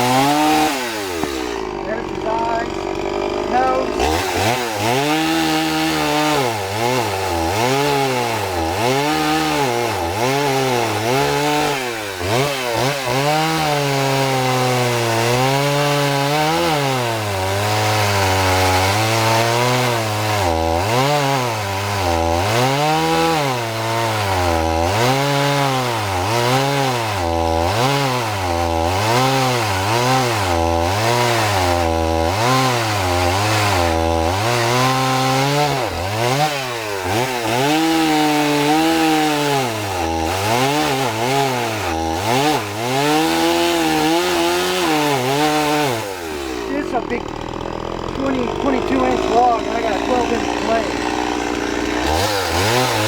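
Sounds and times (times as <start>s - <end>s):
chainsaw cutting log: 0.0s - 53.0s.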